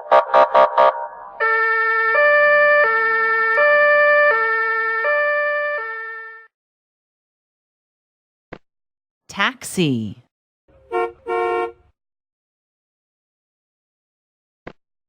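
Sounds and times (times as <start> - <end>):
two-tone siren wail: 0.0 - 6.5.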